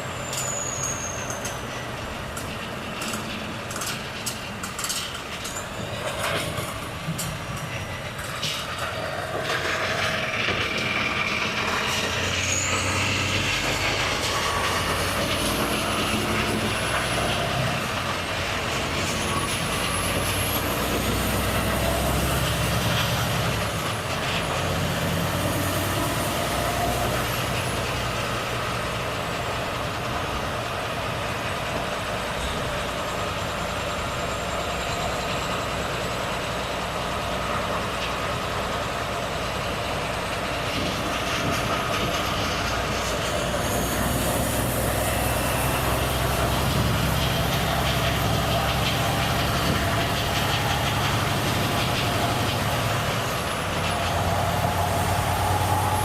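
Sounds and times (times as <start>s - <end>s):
road noise: 0.0s - 56.0s
faint high whistle: 0.2s - 1.6s
truck diesel engine running: 1.3s - 56.0s.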